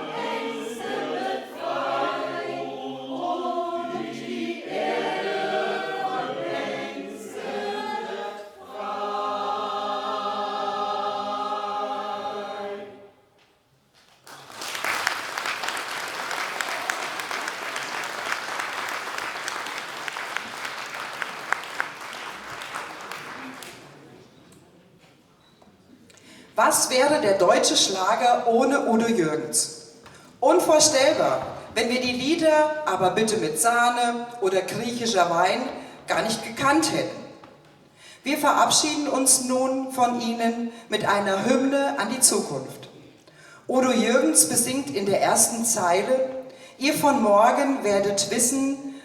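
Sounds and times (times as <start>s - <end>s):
choir singing: 0.0s - 13.3s
audience applauding: 14.1s - 24.2s.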